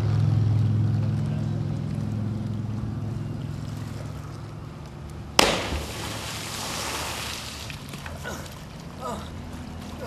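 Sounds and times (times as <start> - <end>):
low engine-like hum: 0.0 - 10.0
loud splash into water: 5.4 - 7.8
spray hissing and water churning: 5.4 - 8.0.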